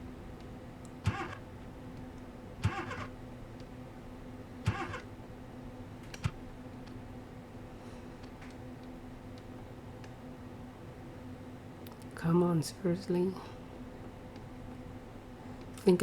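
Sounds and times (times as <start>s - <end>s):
steady low hum: 0.0s - 16.0s
car starter clunking: 2.6s - 3.1s, 4.7s - 5.1s.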